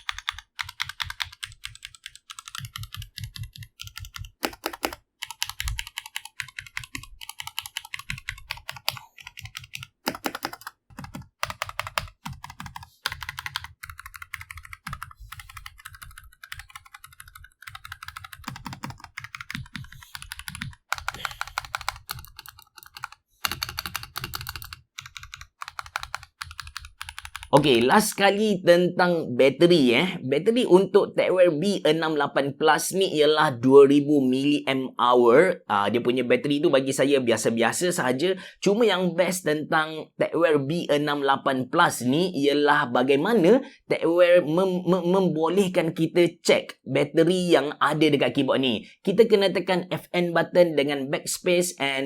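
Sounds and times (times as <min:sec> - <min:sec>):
mechanical keyboard typing: 0:00.0 - 0:28.0.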